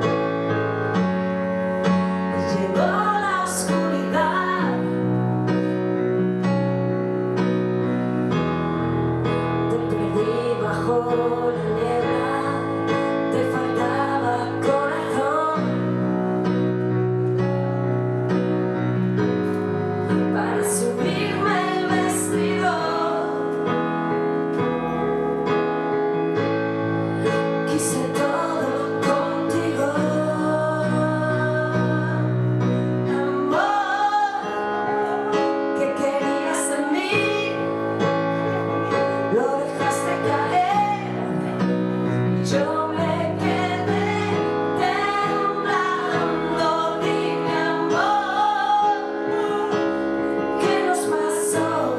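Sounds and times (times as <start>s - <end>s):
keyboard chords: 0.0s - 51.9s
woman singing: 2.4s - 5.1s, 9.7s - 16.0s, 20.3s - 23.5s, 27.6s - 37.7s, 39.2s - 41.5s, 42.5s - 49.8s, 50.6s - 51.9s.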